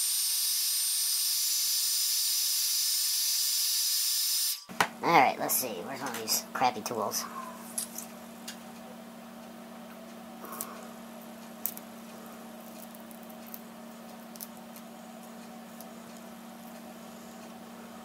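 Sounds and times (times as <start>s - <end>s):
steady low hum: 4.7s - 18.0s.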